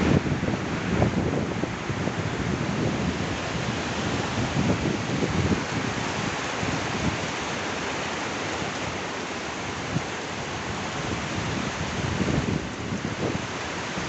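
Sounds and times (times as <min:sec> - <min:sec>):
heavy rain: 0:00.0 - 0:14.0
low rumbling gusts: 0:00.0 - 0:14.0.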